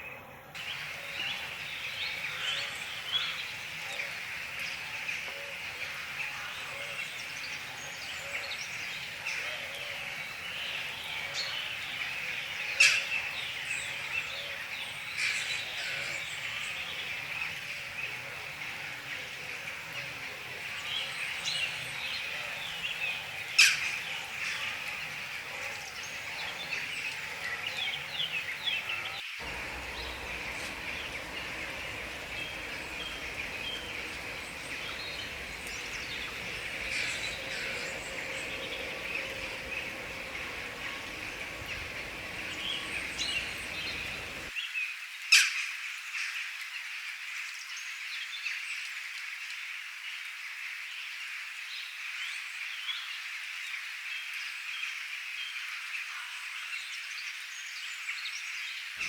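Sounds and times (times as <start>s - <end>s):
sharp loud bird notes: 29.4s - 44.5s
songbirds chirping and trilling: 29.4s - 44.5s.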